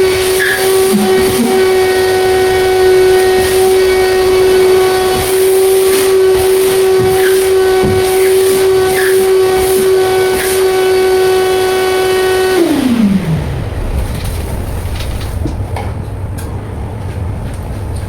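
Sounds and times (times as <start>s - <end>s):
low rumble: 0.0s - 7.7s, 12.6s - 17.1s
wet vacuum motor whining: 0.0s - 16.3s.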